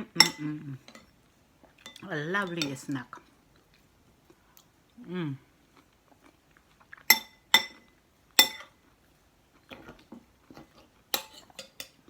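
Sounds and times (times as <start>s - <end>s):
cutlery clinking against a dish: 0.2s - 1.1s, 7.1s - 8.8s, 11.1s - 12.0s.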